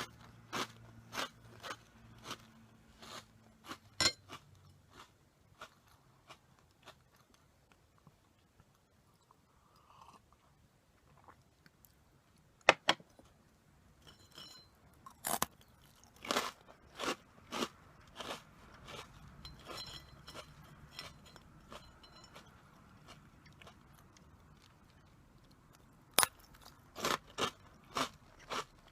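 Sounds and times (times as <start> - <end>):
crunchy chewing: 0.0 - 12.0, 15.0 - 28.9
biting into crunchy snacks: 15.0 - 28.9.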